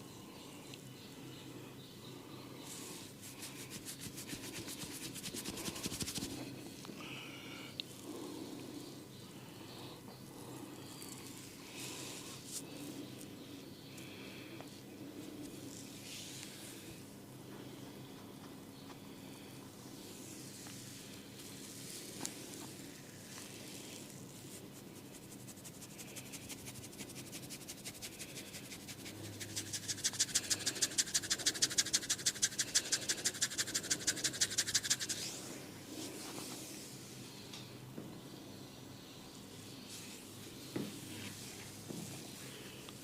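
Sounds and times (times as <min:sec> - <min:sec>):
fingers scratching hair on scalp: 0:03.2 - 0:06.5, 0:23.3 - 0:35.5.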